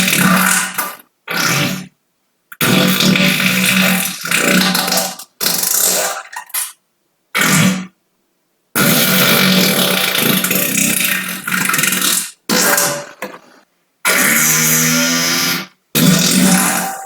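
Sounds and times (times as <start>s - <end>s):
human farts: 0.0s - 2.0s, 2.6s - 6.8s, 7.4s - 8.0s, 8.8s - 17.0s.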